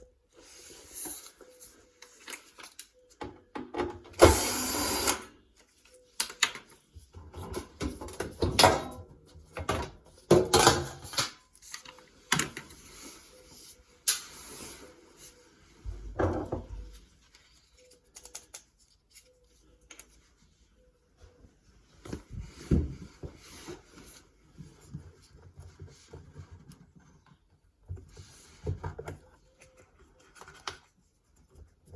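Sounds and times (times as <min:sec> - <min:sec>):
tools clicking and scraping: 0:17.8 - 0:20.1.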